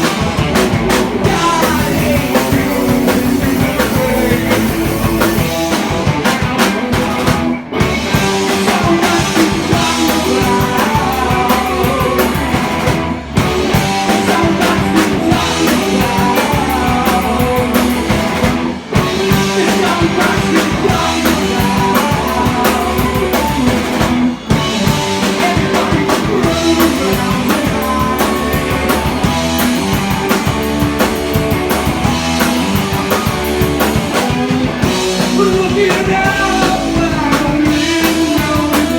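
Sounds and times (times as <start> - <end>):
drum kit: 0.0 - 38.9
electric guitar: 0.0 - 38.9
person singing: 1.2 - 5.8, 8.0 - 13.0, 13.6 - 18.4, 19.0 - 29.5, 34.1 - 38.9.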